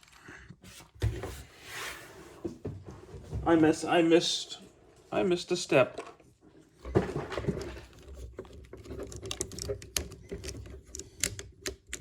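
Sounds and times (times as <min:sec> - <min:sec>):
plastic parts clicking: 0:07.9 - 0:12.0.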